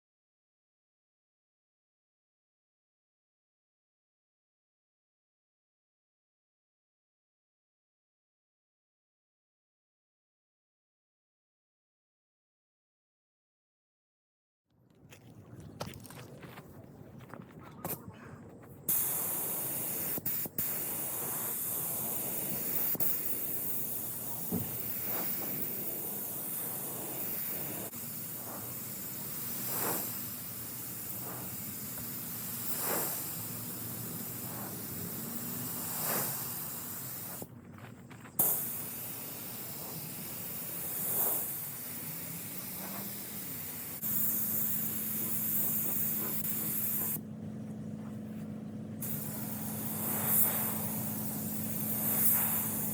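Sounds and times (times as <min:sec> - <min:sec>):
low steady hum: 0:15.0 - 0:52.9
steady hissing: 0:16.9 - 0:47.2, 0:49.0 - 0:52.9.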